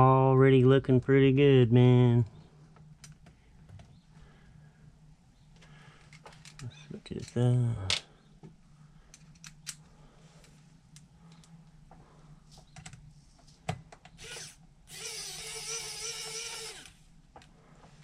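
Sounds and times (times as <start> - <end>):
small parts clicking and tapping: 9.1 - 11.6
electric screwdriver whirring: 14.2 - 17.0.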